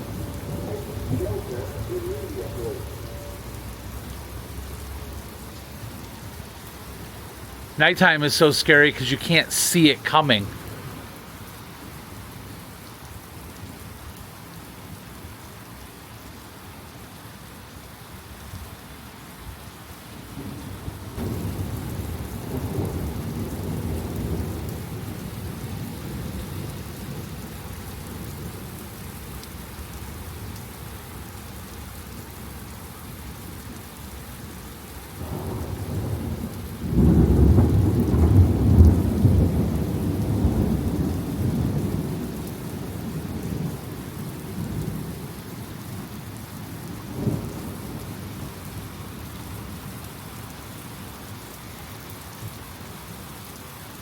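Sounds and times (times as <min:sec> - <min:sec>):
thunder rumbling: 0:00.0 - 0:04.2, 0:21.2 - 0:24.9, 0:35.2 - 0:43.8
steady rain: 0:00.0 - 0:54.0.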